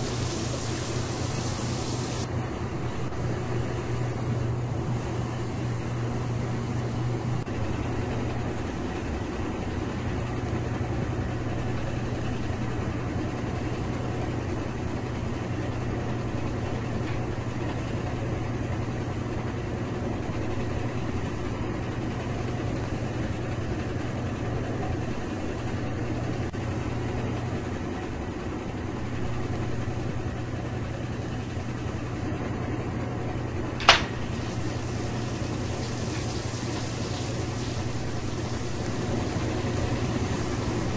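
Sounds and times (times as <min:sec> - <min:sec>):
washing machines running: 0:00.0 - 0:40.9
sharp click: 0:33.8 - 0:34.2.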